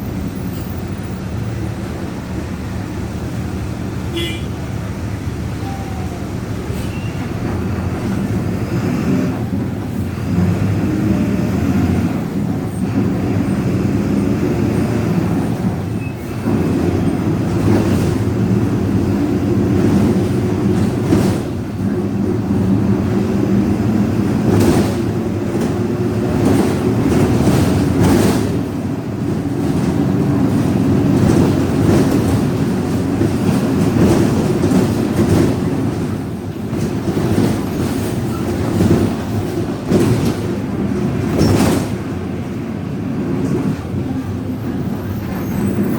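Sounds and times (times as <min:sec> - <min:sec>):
diesel engine drone: 0:00.0 - 0:33.3.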